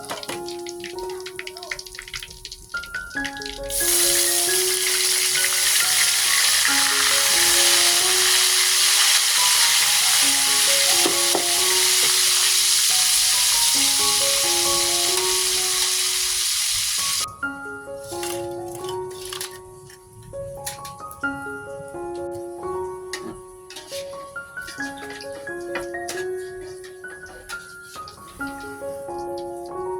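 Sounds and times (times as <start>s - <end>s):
food sizzling in hot oil: 0.0s - 17.3s
plucked background music: 0.0s - 29.9s.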